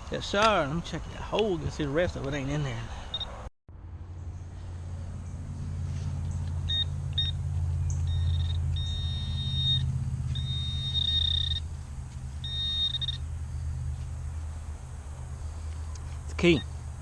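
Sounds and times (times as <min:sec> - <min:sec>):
steady low rumble: 0:03.7 - 0:17.0
metal detector beeping: 0:06.7 - 0:11.7, 0:12.4 - 0:13.2.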